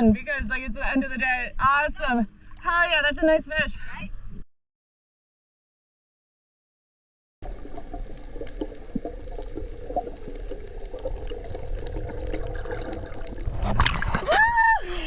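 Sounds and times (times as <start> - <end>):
water trickling and sloshing: 7.4 - 14.5.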